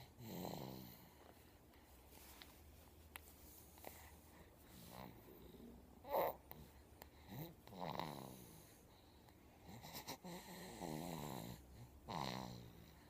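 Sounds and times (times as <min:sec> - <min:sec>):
baby snoring: 0:00.0 - 0:01.1, 0:03.8 - 0:08.8, 0:09.6 - 0:13.0.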